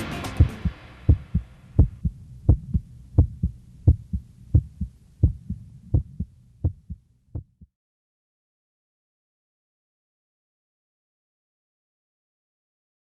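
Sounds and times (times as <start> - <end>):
low heartbeat-like double thumps: 0.3 - 7.7.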